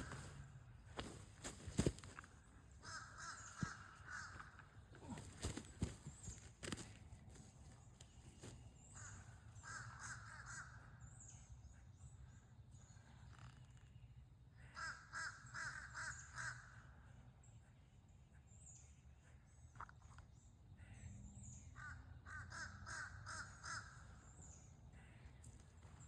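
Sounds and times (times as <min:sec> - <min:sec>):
small birds chirping: 0:00.0 - 0:09.8
faint crow cawing: 0:02.8 - 0:06.9, 0:08.4 - 0:11.0, 0:14.6 - 0:16.9, 0:21.8 - 0:24.3.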